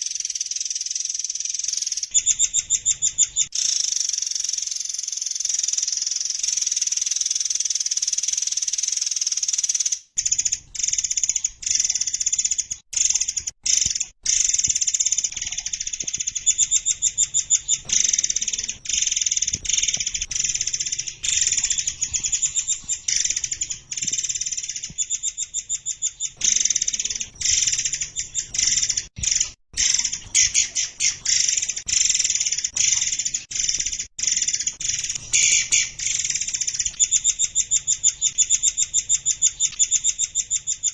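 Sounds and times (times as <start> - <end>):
songbirds singing: 9.7 - 40.9.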